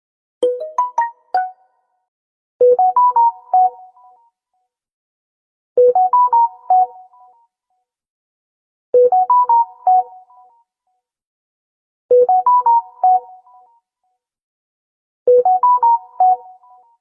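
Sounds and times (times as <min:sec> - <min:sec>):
smartphone notification tune: 0:00.4 - 0:01.6.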